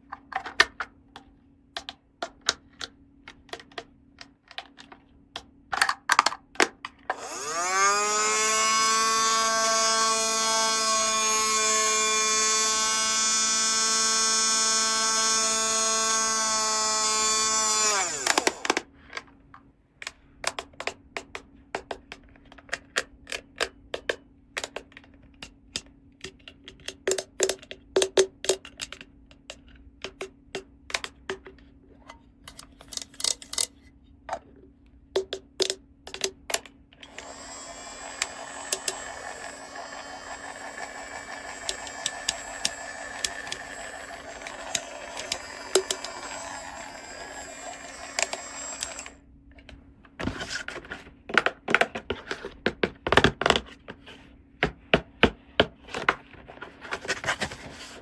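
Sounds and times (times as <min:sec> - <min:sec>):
plastic toy pieces clicking: 0:08.8 - 0:19.3, 0:20.0 - 0:31.5, 0:32.5 - 0:33.7, 0:35.2 - 0:49.2.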